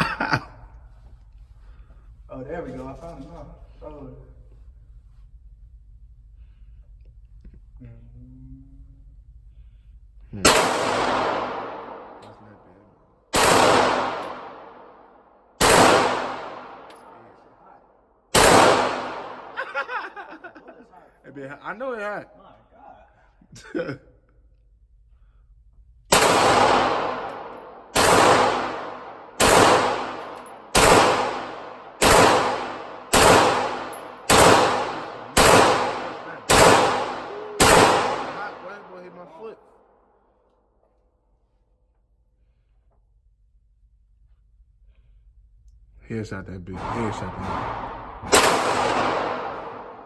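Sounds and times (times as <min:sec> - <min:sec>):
gunshots ringing out: 0:10.4 - 0:12.6, 0:13.3 - 0:15.0, 0:15.6 - 0:17.4, 0:18.3 - 0:19.9, 0:26.1 - 0:39.4, 0:46.7 - 0:50.0.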